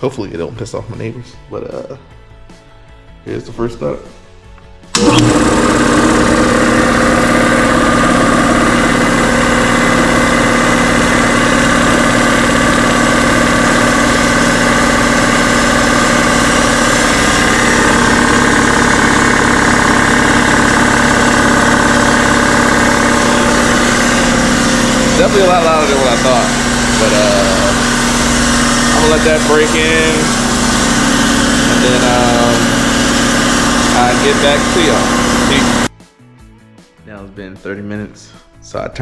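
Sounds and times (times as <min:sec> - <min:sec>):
electric air compressor running: 0:04.9 - 0:35.9.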